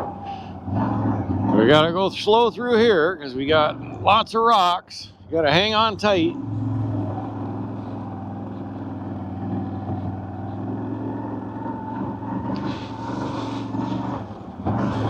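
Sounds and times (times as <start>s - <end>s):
atv engine running at low speed: 0.0s - 15.0s.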